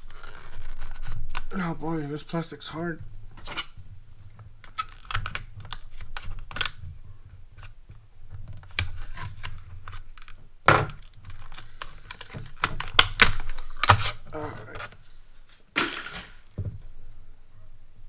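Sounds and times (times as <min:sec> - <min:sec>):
plastic packaging snapping and crackling: 0:00.0 - 0:01.8, 0:04.6 - 0:06.8, 0:08.5 - 0:16.6.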